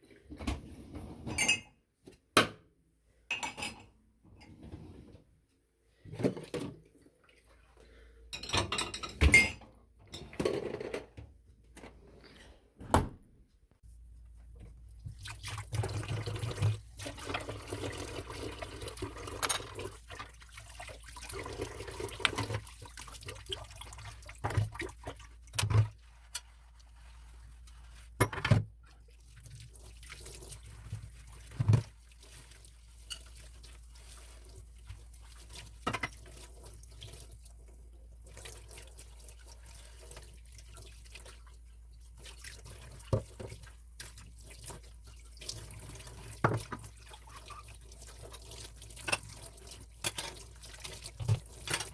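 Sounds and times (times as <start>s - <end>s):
liquid pouring and dripping: 14.8s - 27.8s, 28.9s - 51.9s.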